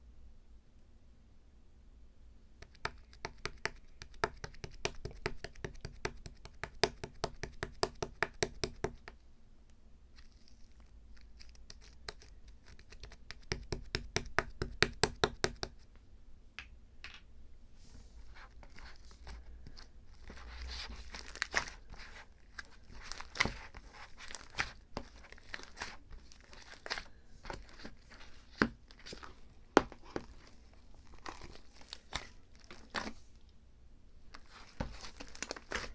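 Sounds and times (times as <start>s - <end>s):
material tearing and crinkling: 20.2s - 29.4s, 30.0s - 33.3s, 34.3s - 35.9s.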